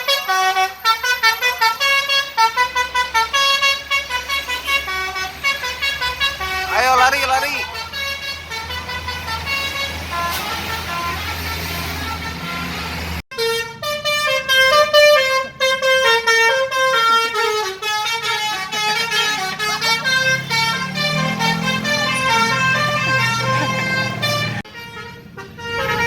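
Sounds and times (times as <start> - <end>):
bus engine running: 0.0 - 26.0
musical air horn tune: 7.6 - 26.0.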